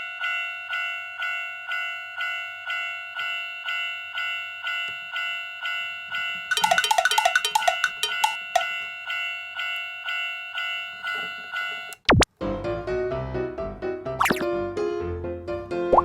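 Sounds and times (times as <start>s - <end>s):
electronic crossing warning bell: 0.1s - 11.9s
clicks and short notes: 6.5s - 8.7s.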